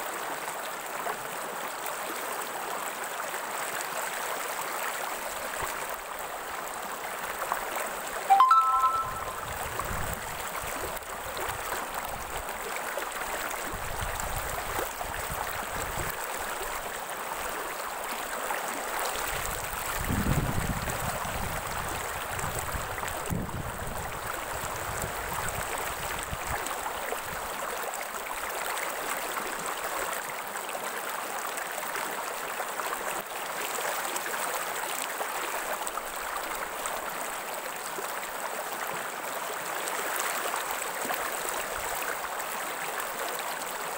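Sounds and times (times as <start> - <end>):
stream water rushing: 24.0 - 43.9.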